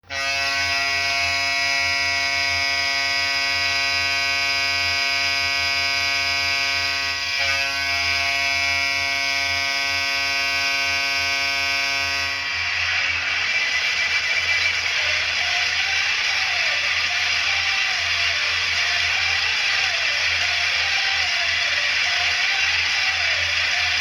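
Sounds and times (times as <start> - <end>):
goal horn blast: 0.1 - 12.6.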